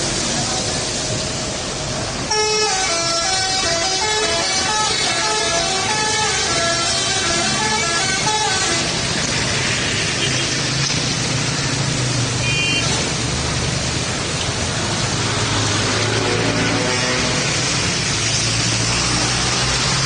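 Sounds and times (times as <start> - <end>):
traffic noise: 0.0 - 20.0
truck musical horn tune: 2.3 - 9.0.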